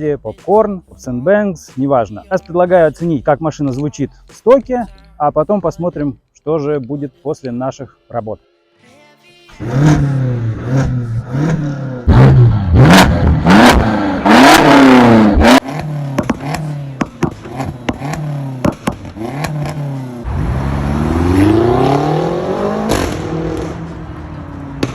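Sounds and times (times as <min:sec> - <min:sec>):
car engine revving: 0:09.5 - 0:24.9
exhaust pops and crackles: 0:13.2 - 0:19.9.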